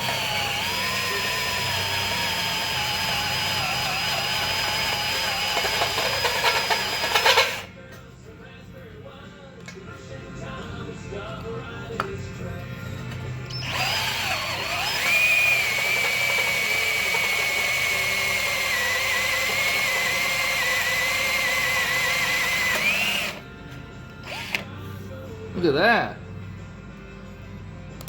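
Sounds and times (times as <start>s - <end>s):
power drill cutting steel: 0.0s - 7.7s, 13.5s - 23.4s, 24.2s - 24.7s.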